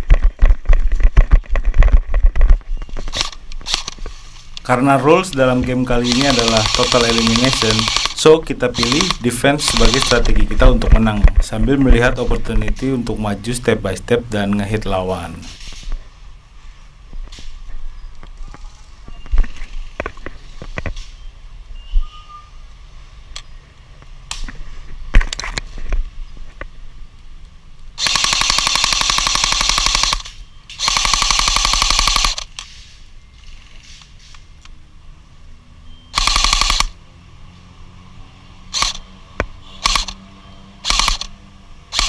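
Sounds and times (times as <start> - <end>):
airsoft gun full-auto bursts: 5.9 - 10.8, 28.0 - 32.6, 36.2 - 37.0, 38.7 - 39.0, 39.8 - 40.2, 40.8 - 41.3.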